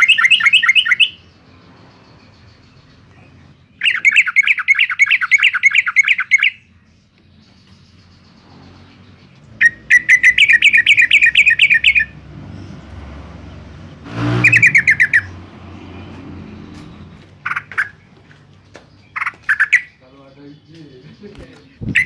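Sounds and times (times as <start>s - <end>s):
bird chattering call: 0.0s - 6.7s, 8.4s - 12.2s, 14.1s - 18.2s, 19.0s - 22.0s.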